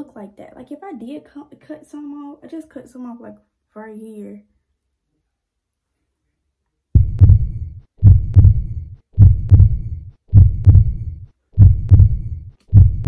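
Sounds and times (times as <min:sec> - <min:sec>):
heartbeat double thump: 0:07.0 - 0:13.0.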